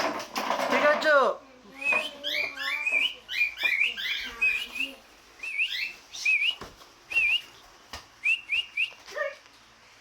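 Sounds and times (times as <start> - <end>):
cockatiels chirping: 1.8 - 6.6.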